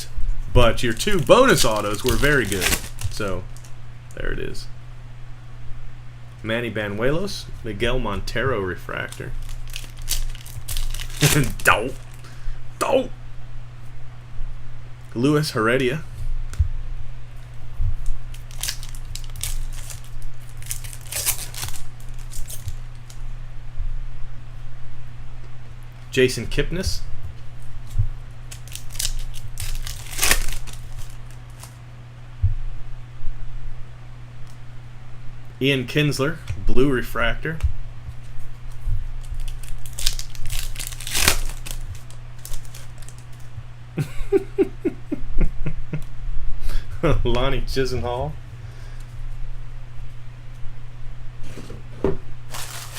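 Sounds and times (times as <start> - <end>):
low electrical hum: 0.0 - 52.9
foil wrappers crinkling: 0.6 - 3.8, 8.8 - 12.3, 18.1 - 23.2, 28.4 - 31.8, 38.7 - 43.6, 52.5 - 52.9.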